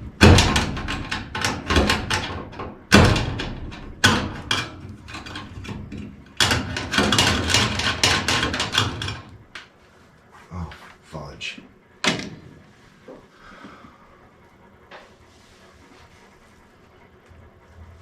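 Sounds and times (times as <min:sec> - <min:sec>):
loud metal bangs: 0:00.0 - 0:05.7
tools clattering on sheet metal: 0:00.2 - 0:09.4.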